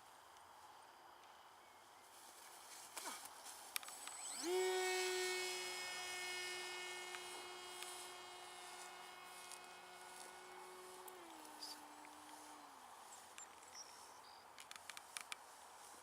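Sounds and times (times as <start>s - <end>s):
electric motors and propellers whining: 3.8s - 14.6s.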